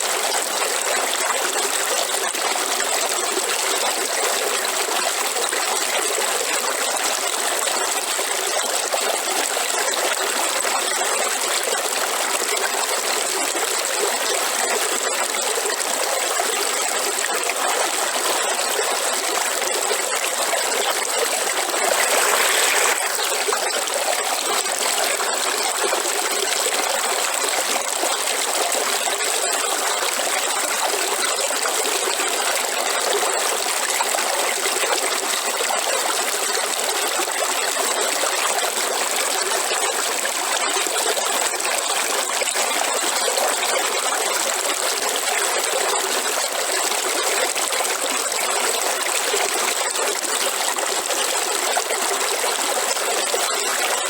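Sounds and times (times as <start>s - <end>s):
river water flowing: 12.2s - 54.0s.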